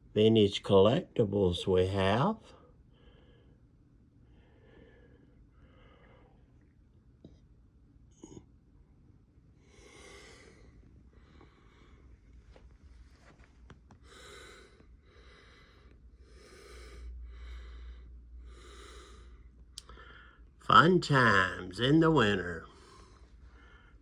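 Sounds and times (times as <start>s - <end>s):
person breathing: 2.6s - 3.7s, 4.3s - 6.6s, 9.6s - 12.6s, 13.3s - 20.6s, 22.6s - 24.0s.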